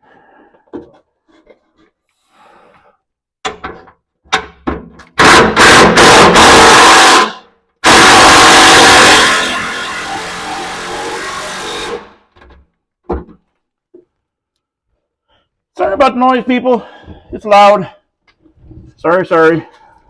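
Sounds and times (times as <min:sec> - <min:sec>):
impact wrench running: 0:05.2 - 0:12.1.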